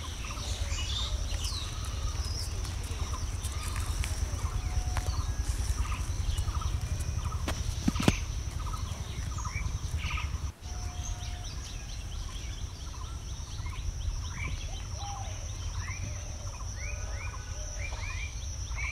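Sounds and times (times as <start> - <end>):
low rumble: 0.0 - 18.8
birds calling: 0.0 - 18.9
high insect drone: 0.0 - 18.9.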